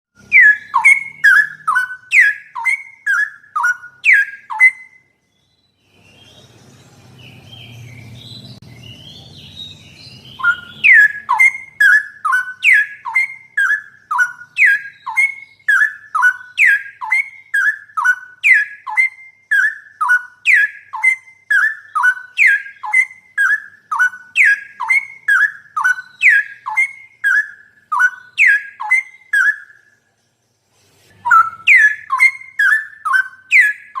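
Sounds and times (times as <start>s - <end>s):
bird whistling falling notes: 0.2s - 5.0s, 31.2s - 34.0s
faint chirps: 0.2s - 34.0s.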